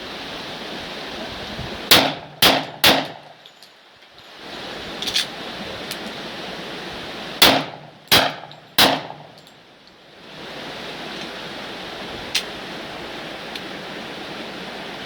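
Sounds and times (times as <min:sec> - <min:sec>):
gunshots with echo: 0:01.9 - 0:03.3, 0:07.4 - 0:09.3.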